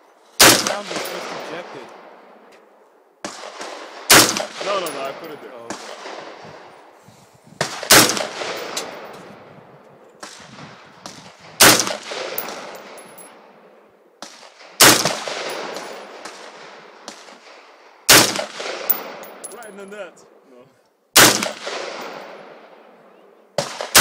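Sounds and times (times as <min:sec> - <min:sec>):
rifle shots echoing: 0:00.4 - 0:02.4, 0:03.2 - 0:06.7, 0:07.6 - 0:09.4, 0:10.2 - 0:19.7, 0:21.1 - 0:23.0, 0:23.6 - 0:24.0.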